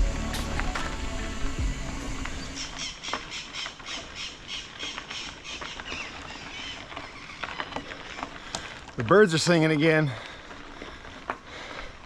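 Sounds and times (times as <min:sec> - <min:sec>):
faint outdoor hiss: 0:00.0 - 0:06.0
bird harsh squawking: 0:02.4 - 0:07.7.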